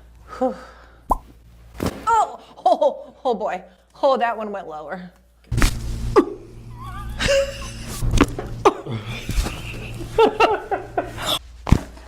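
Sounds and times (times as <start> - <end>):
person laughing: 6.2 - 11.4.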